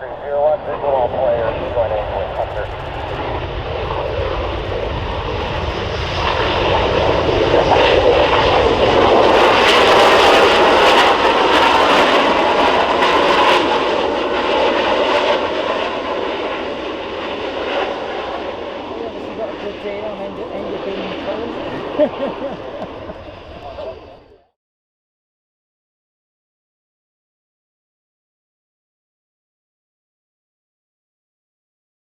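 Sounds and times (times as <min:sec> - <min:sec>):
jet engines running: 0:00.0 - 0:24.5.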